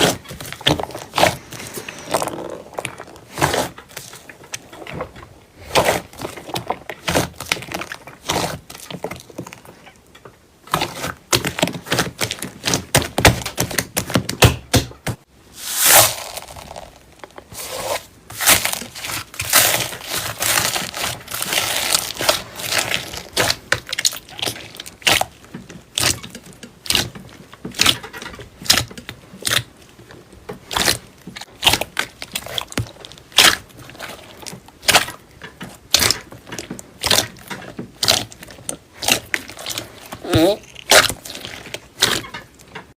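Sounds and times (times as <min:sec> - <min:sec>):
slime crackling and popping: 0:15.6 - 0:29.8, 0:30.6 - 0:42.7.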